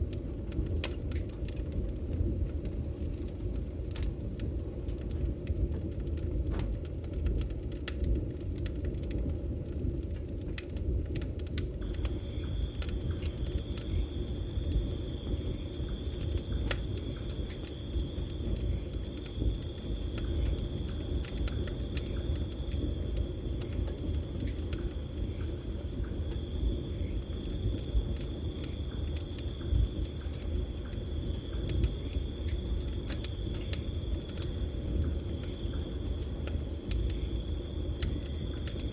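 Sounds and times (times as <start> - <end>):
campfire crackling and popping: 0.0 - 38.9
crickets trilling: 11.8 - 38.9.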